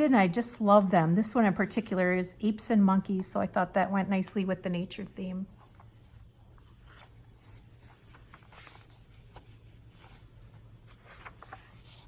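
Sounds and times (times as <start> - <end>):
paper pages rustling: 5.5 - 12.0.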